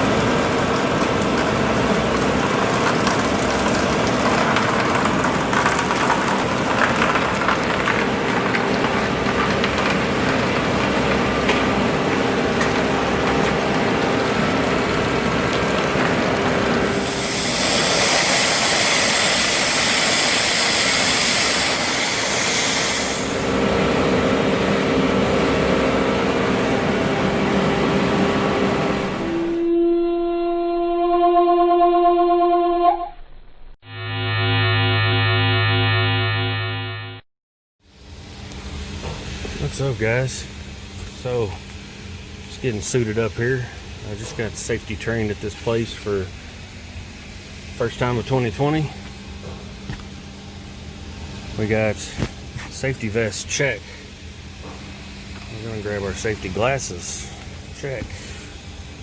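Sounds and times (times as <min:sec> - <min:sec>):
mechanical hum: 0:00.0 - 0:36.3, 0:37.8 - 0:59.0
loud hiss: 0:17.0 - 0:23.6.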